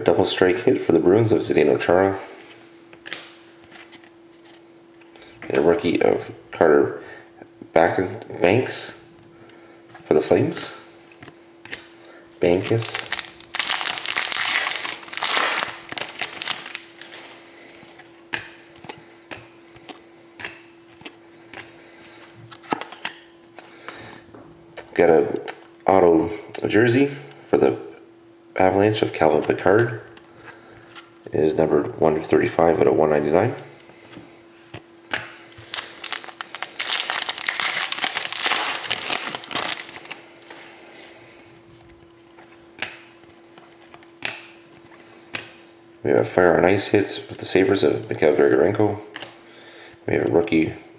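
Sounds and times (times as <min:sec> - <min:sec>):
faint steady hum: 0:00.0 - 0:50.9
trading cards rustling and sliding: 0:02.4 - 0:04.7, 0:12.5 - 0:18.1, 0:18.8 - 0:23.7, 0:35.5 - 0:42.6
wrapper crinkling and rustling: 0:12.6 - 0:17.4, 0:35.6 - 0:40.6.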